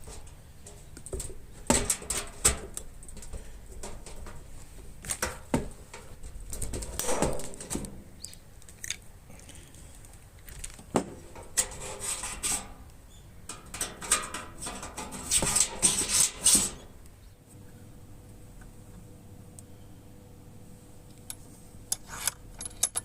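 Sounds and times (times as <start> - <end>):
sheet metal clinking and scraping: 0.0 - 4.5, 11.2 - 12.8, 13.5 - 16.9.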